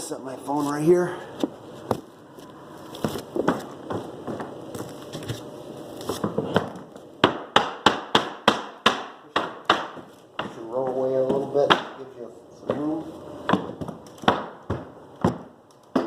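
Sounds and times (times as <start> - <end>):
hammer nailing wood: 6.5 - 12.0, 13.5 - 16.0.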